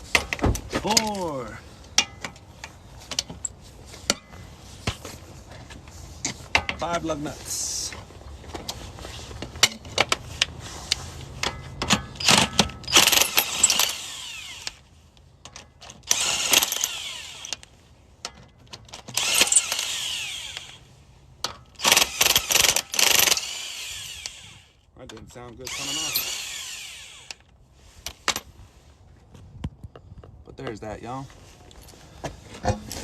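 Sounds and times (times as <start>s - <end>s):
impact wrench bursts: 11.9s - 14.8s, 16.0s - 17.6s, 19.1s - 20.8s, 21.7s - 24.8s, 25.7s - 27.5s.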